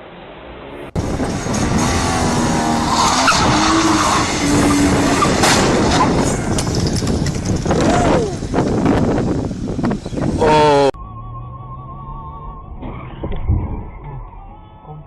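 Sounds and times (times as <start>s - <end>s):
loud vehicle noise: 0.0s - 15.0s
car tyres skidding and squealing: 0.6s - 8.9s.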